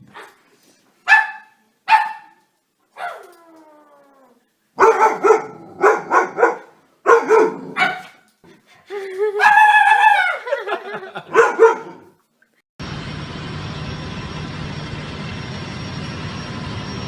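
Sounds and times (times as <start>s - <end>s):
dog barking: 1.1s - 2.4s, 3.0s - 3.3s, 4.8s - 8.3s, 11.2s - 12.1s.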